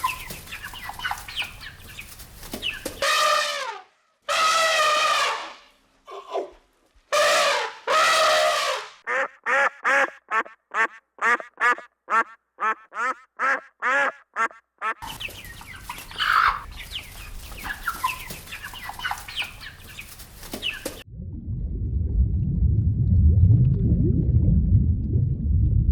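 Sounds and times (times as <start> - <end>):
duck quacking: 7.2 - 15.1.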